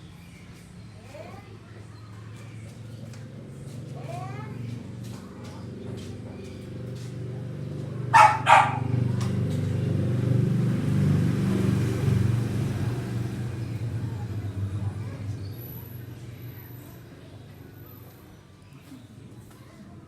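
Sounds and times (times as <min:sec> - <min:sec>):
motorcycle engine running: 0:02.5 - 0:17.2
dog barking: 0:08.1 - 0:09.0.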